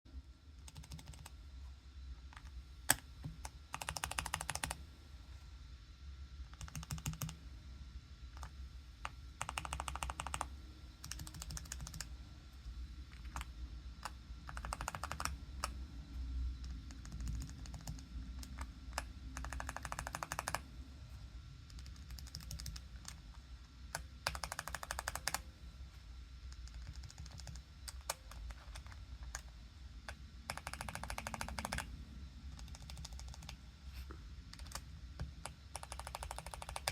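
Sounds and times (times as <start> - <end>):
mechanical keyboard typing: 0.6 - 1.4, 2.3 - 4.8, 6.5 - 7.4, 8.4 - 12.1, 13.1 - 15.8, 16.6 - 20.7, 21.7 - 23.2, 23.9 - 25.4, 26.5 - 31.9, 32.5 - 33.6, 34.5 - 36.9.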